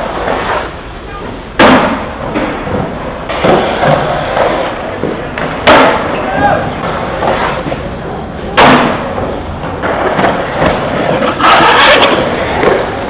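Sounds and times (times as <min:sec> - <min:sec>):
skateboard clacking on ground: 0:00.0 - 0:13.0
skateboard wheels rolling: 0:00.0 - 0:13.0.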